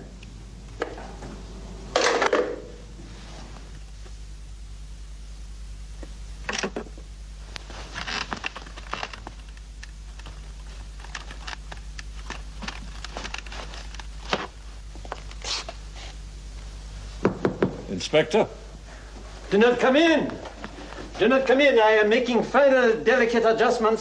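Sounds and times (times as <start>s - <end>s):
steady low hum: 0.0s - 24.0s
louder knocks: 17.2s - 17.9s.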